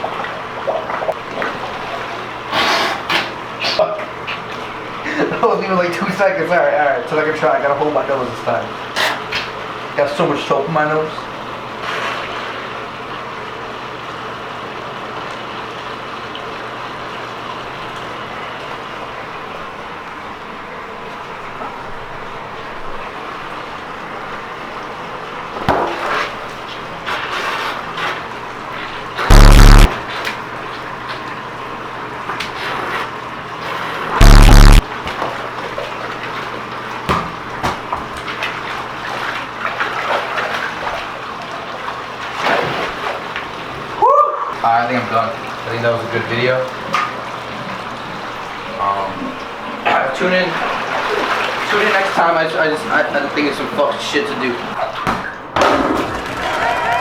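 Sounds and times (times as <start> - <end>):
water running into bathtub: 44.8 - 55.0
water splashes: 50.4 - 52.4.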